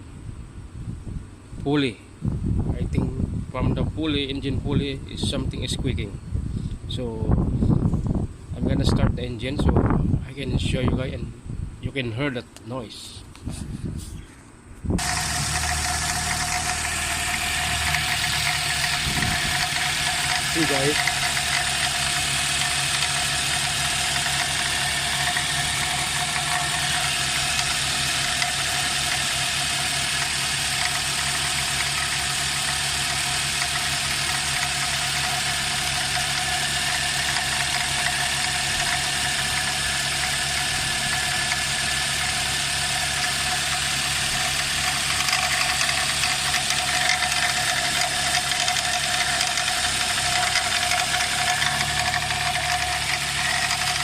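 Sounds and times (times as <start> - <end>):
car engine idling: 15.0 - 54.0
high belt pulley squeak: 43.0 - 54.0.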